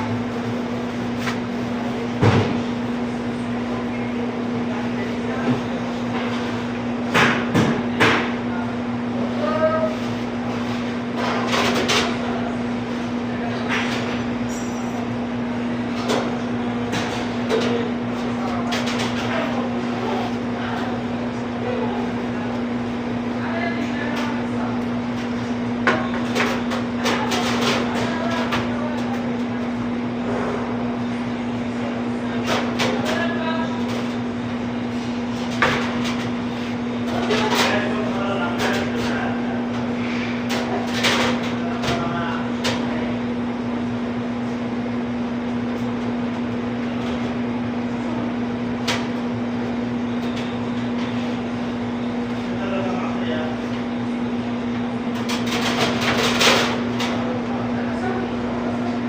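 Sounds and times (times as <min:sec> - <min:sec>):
steady machine hum: 0:00.0 - 0:59.0
faint voices: 0:49.4 - 0:59.0.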